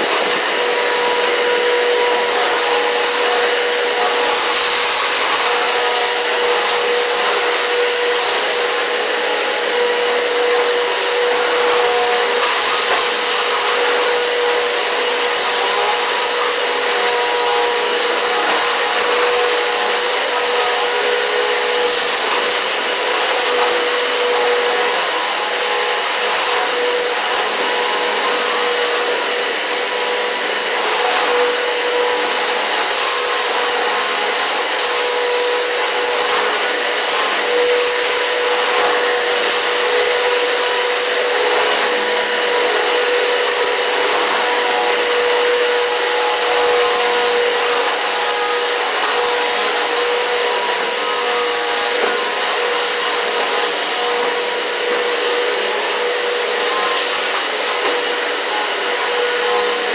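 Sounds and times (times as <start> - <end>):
vacuum cleaner motor whine: 0.0 - 59.9.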